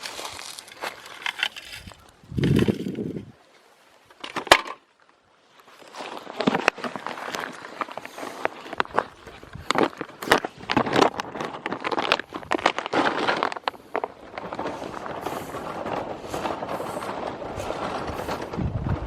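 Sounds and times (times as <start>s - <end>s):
dry crackling and rustling: 0.0s - 3.4s, 4.0s - 19.0s
wind noise on microphone: 1.5s - 3.4s, 7.5s - 19.0s.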